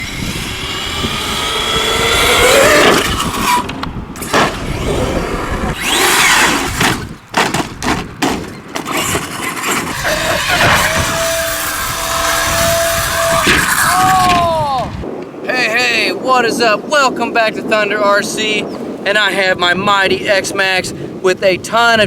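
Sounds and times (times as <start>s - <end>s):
electric motor whining: 0.0s - 7.2s, 8.9s - 14.5s
tyre and ground noise: 0.0s - 15.5s.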